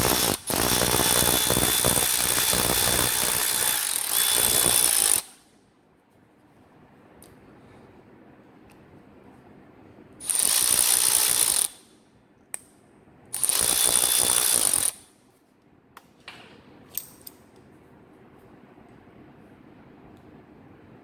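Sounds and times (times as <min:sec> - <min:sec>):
cordless ratchet motor whine: 0:00.0 - 0:05.2.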